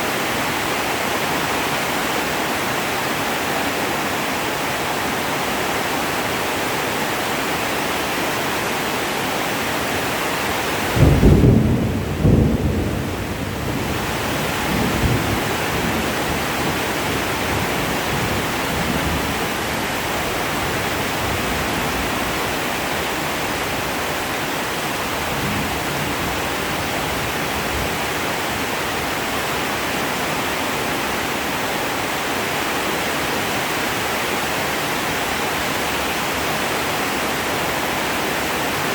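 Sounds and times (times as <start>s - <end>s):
heavy rain: 0.0s - 38.9s
thunder rumbling: 10.5s - 28.0s.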